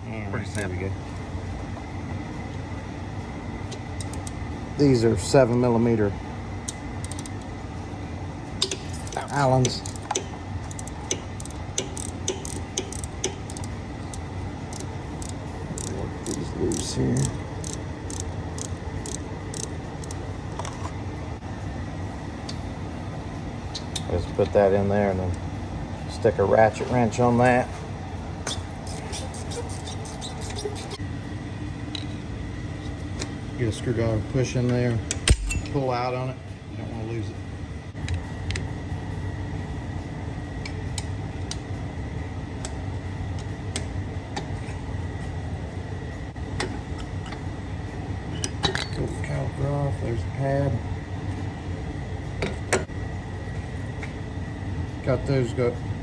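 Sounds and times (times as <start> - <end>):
steady low hum: 0.0 - 56.0
ratchet clicking: 4.0 - 4.4, 6.7 - 7.4, 8.6 - 20.3, 28.5 - 31.0.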